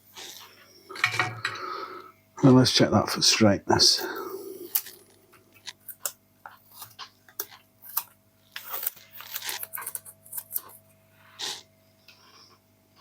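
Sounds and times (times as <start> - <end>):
crinkly rustles: 8.4 - 11.5.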